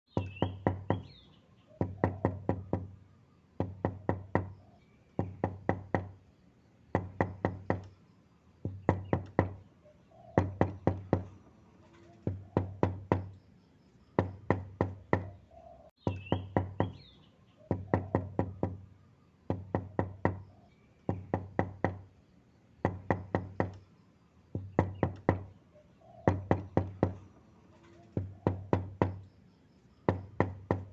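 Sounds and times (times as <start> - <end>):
knocking on wooden door: 0.2 - 1.1, 1.8 - 3.0, 3.6 - 4.6, 5.2 - 6.1, 6.9 - 7.8, 8.6 - 9.6, 10.4 - 11.3, 12.3 - 13.3, 14.2 - 15.3, 16.0 - 17.0, 17.7 - 18.8, 19.5 - 20.5, 21.1 - 22.0, 22.8 - 23.8, 24.6 - 25.5, 26.3 - 27.2, 28.2 - 29.2, 30.1 - 30.9.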